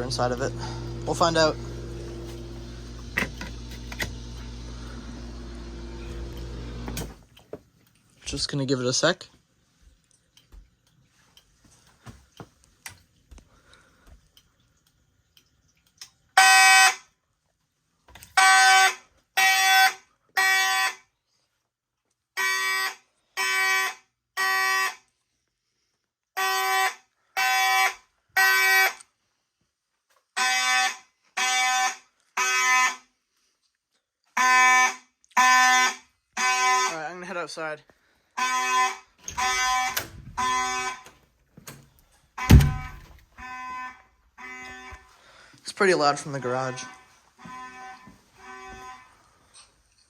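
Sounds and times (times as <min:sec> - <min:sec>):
fire alarm horn blasts: 0:16.4 - 0:17.1, 0:18.4 - 0:21.1, 0:22.4 - 0:25.1, 0:26.4 - 0:29.0, 0:30.4 - 0:33.1, 0:34.4 - 0:37.2, 0:38.4 - 0:41.1, 0:42.4 - 0:45.3, 0:46.2 - 0:49.3.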